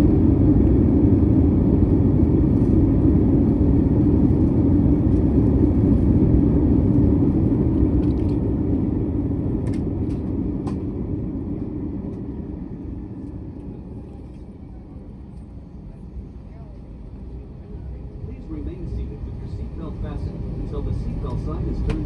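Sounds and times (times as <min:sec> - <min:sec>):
aircraft cabin low rumble: 0:00.0 - 0:22.0.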